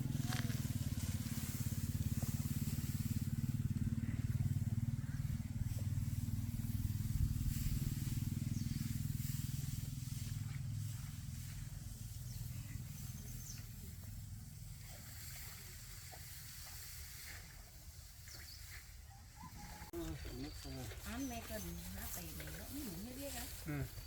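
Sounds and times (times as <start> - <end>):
motor engine humming: 0.0 - 17.0.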